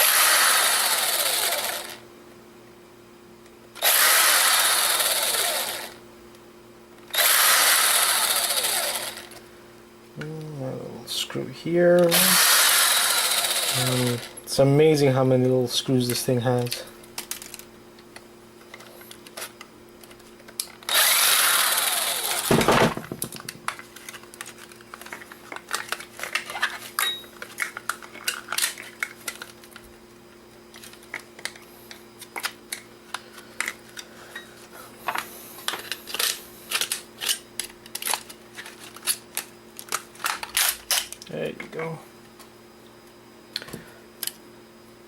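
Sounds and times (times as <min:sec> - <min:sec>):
electric screwdriver whirring: 0:00.0 - 0:02.0, 0:03.8 - 0:06.0, 0:07.1 - 0:09.4, 0:12.0 - 0:14.3, 0:20.8 - 0:22.7.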